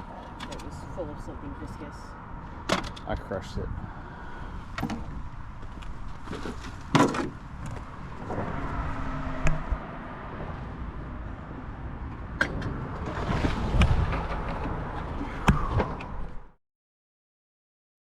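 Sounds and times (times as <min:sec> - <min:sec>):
motor vehicle rumble: 0:00.0 - 0:16.6
sharp knocks and clatters: 0:06.2 - 0:08.4.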